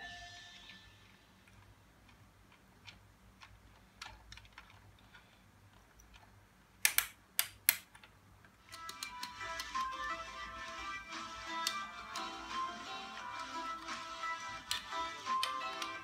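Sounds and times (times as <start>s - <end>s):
plastic parts being handled: 1.4s - 10.1s
small screwdriver clicks and taps: 6.8s - 8.1s.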